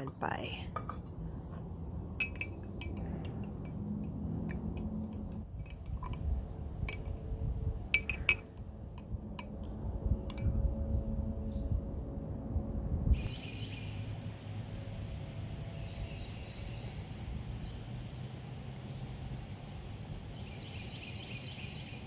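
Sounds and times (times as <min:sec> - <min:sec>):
low steady rumble: 0:00.0 - 0:22.0
kitchenware clinking: 0:02.2 - 0:03.7.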